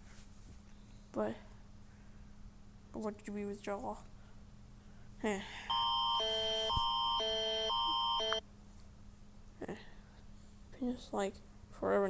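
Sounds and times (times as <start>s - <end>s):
electronic alert tone: 5.7s - 8.4s.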